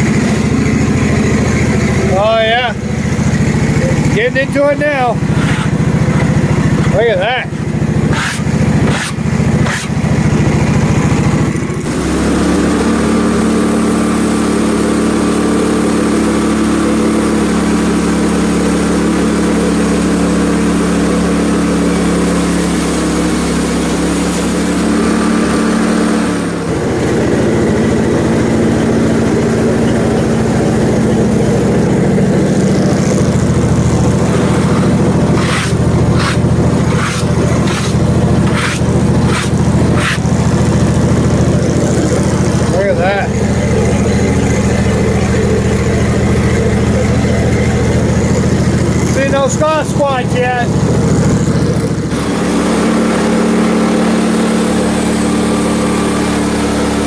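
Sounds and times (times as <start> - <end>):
gas engine running under load: 0.0 - 57.0
band blade cutting wood: 5.3 - 7.0, 8.1 - 10.1, 21.2 - 26.3, 34.0 - 40.4.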